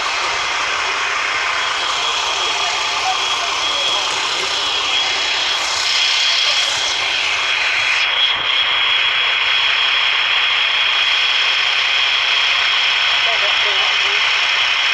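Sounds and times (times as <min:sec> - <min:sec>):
high-pitched whine: 0:00.0 - 0:14.9.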